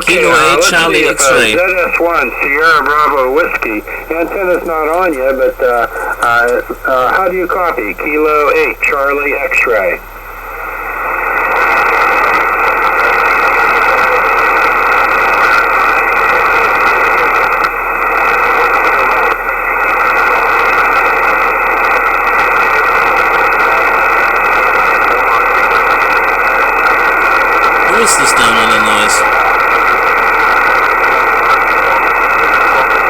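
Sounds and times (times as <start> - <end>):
radio static hiss: 0.0 - 1.7, 3.4 - 7.2, 27.9 - 29.3.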